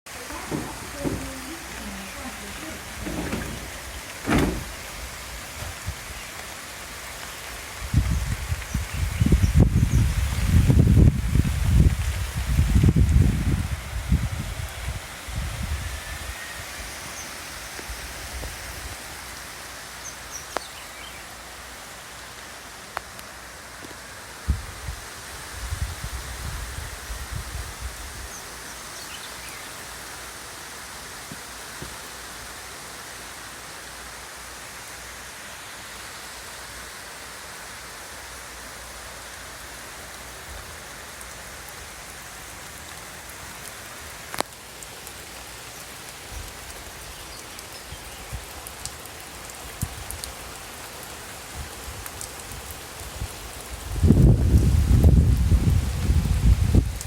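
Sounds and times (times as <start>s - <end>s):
steady rain falling: 0.1s - 57.0s.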